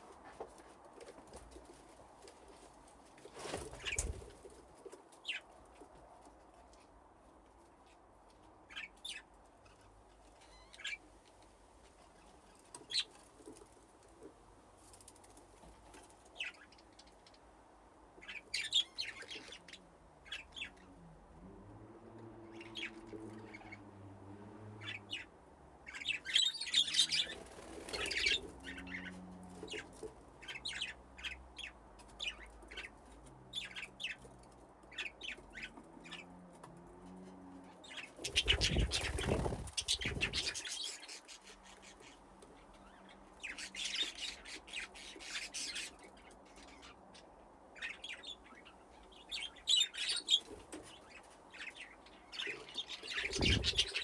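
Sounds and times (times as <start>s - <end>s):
budgerigars chirping: 25.9s - 29.1s, 37.9s - 41.2s, 51.6s - 54.0s.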